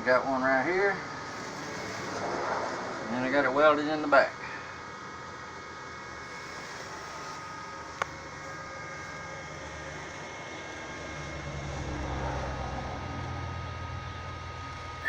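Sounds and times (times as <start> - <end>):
low engine rumble: 10.2 - 15.0.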